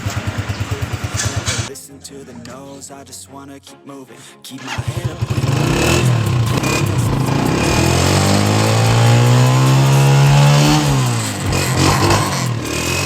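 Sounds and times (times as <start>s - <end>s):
motorcycle engine revving: 0.0s - 1.7s, 4.6s - 13.0s.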